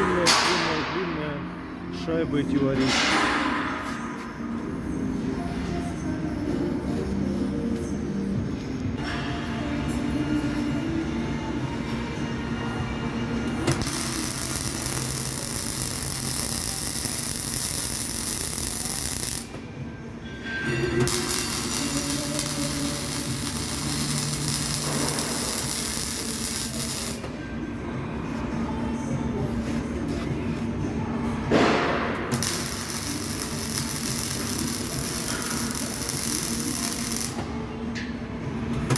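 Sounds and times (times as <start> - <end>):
low workshop hum: 0.0 - 38.9
welding arc hissing: 13.7 - 19.6, 21.0 - 27.3, 32.3 - 37.4.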